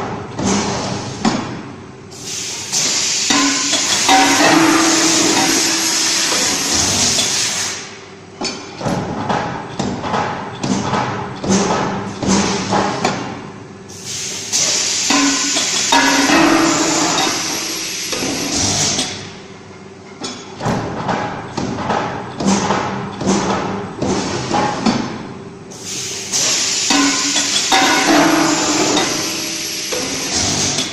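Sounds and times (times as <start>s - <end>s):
press machine knocking and clanking: 0.0s - 1.7s, 2.8s - 7.6s, 8.4s - 13.6s, 14.6s - 19.4s, 20.0s - 25.4s, 26.4s - 30.9s
machine hissing: 2.1s - 8.0s, 13.9s - 19.3s, 25.7s - 30.9s.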